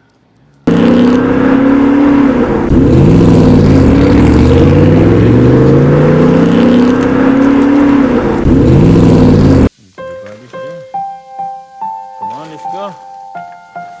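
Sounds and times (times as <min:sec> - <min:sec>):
racing car engines revving: 0:00.7 - 0:09.7.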